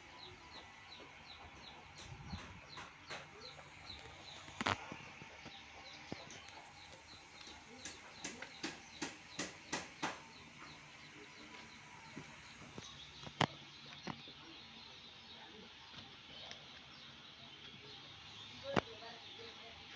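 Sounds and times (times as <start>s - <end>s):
faint bird chirping: 0.0s - 19.9s
sharp knocks: 7.8s - 10.4s.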